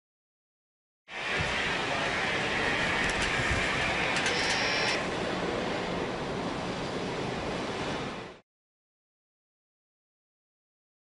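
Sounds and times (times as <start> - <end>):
thin high whine: 1.1 - 6.0.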